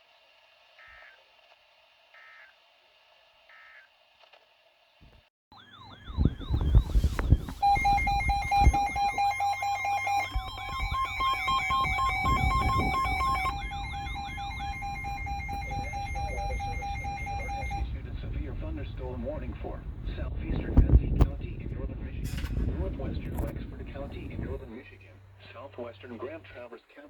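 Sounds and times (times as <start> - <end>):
electronic siren yelping: 5.5 - 19.4
beeping alert tones: 5.8 - 18.0
low rumble: 6.1 - 25.4.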